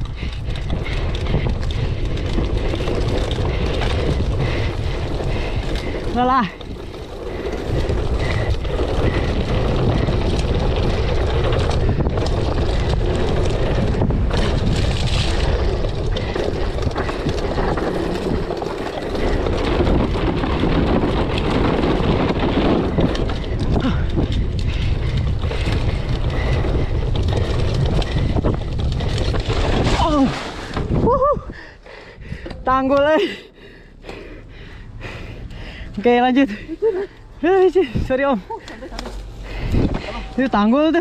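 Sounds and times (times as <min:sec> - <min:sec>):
wind rush over microphone: 0:00.0 - 0:32.9, 0:34.6 - 0:41.0
tyres rolling through mud: 0:00.0 - 0:41.0.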